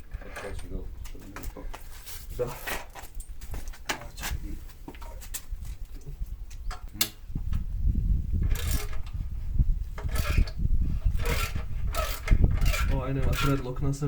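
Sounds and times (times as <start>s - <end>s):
microphone handling rumble: 0.0s - 14.0s
short rasping burst: 10.0s - 13.6s.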